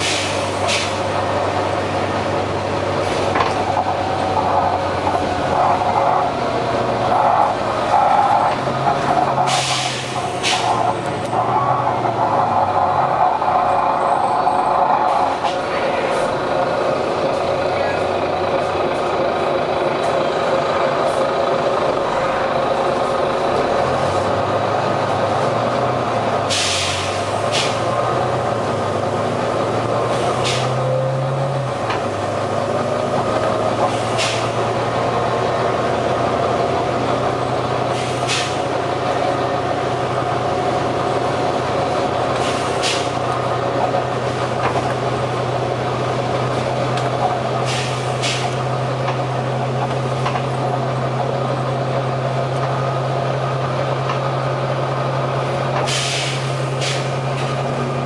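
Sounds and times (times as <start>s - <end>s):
short sharp hisses: 0.0s - 1.0s, 9.5s - 10.8s, 26.5s - 27.8s, 38.0s - 38.6s, 47.6s - 48.6s, 55.9s - 57.1s
diesel bus engine running: 0.0s - 58.0s.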